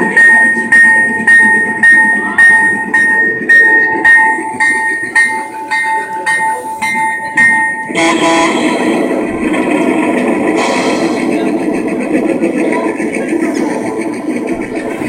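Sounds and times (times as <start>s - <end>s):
bell ringing: 0.0s - 9.1s
steady horn tone: 7.7s - 9.6s, 10.5s - 11.4s.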